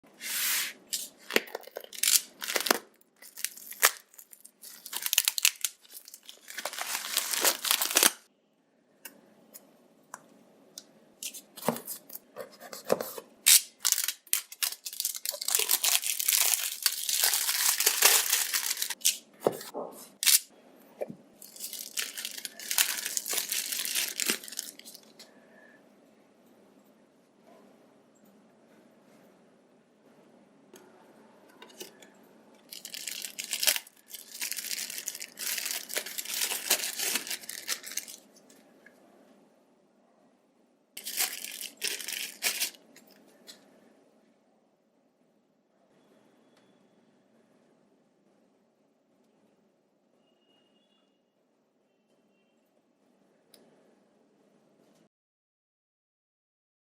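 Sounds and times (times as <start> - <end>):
packaging tearing and rustling: 0.6 - 8.3, 12.7 - 20.5, 21.4 - 25.2, 32.7 - 38.3, 41.0 - 42.8.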